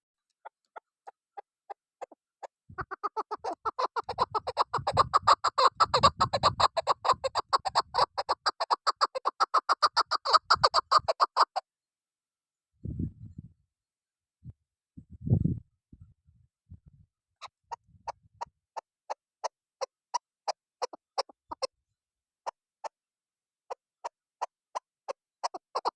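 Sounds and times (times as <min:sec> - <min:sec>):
partridge clucking: 0:00.2 - 0:11.5.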